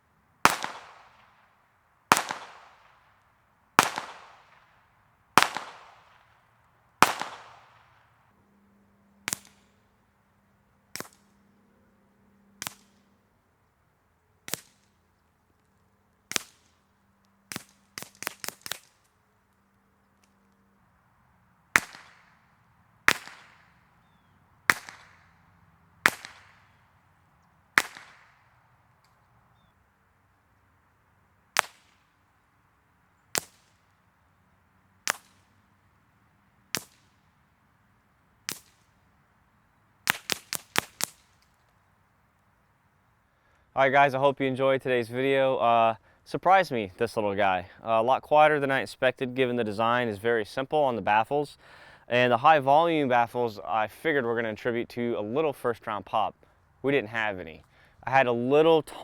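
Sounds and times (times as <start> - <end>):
rifle gunshots with echoes: 0.4 - 1.5, 2.1 - 3.0, 3.8 - 4.8, 5.4 - 6.4, 7.0 - 8.1, 21.8 - 23.9, 24.7 - 27.0, 27.8 - 28.6.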